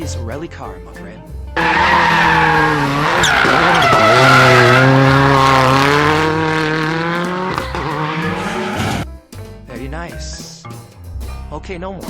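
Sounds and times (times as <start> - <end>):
racing car engine: 1.6 - 9.0.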